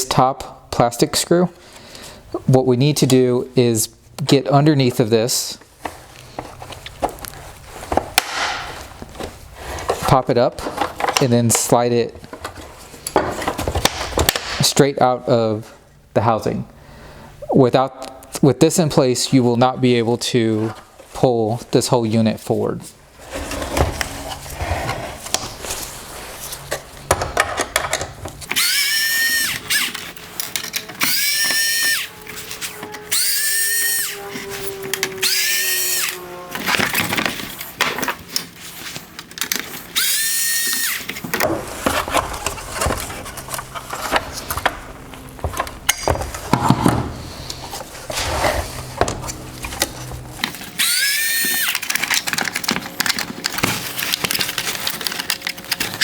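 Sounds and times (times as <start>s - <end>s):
power screwdriver whining: 26.7s - 37.8s, 39.8s - 41.3s, 47.3s - 56.0s.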